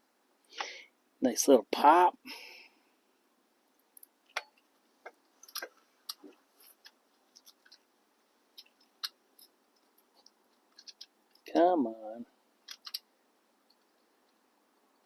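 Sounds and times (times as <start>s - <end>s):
light clicks of small parts: 12.6s - 14.4s.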